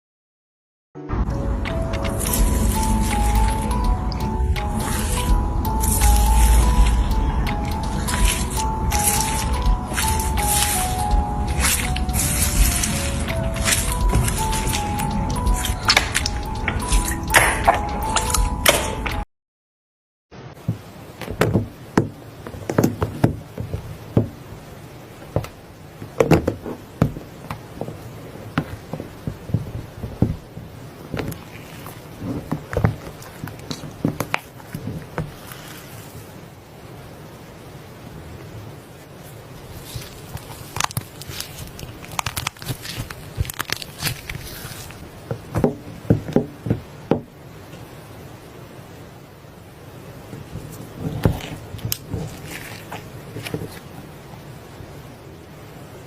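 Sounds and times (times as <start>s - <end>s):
slime crackling and popping: 5.8s - 17.6s, 39.8s - 45.0s
slime squeezed by hand: 39.8s - 45.0s.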